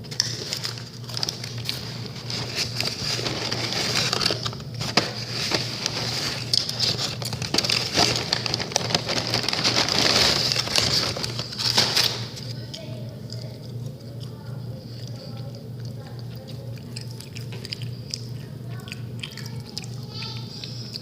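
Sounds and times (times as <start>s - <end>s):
dense crunchy crackling: 0.0s - 13.5s
steady low hum: 0.0s - 21.0s.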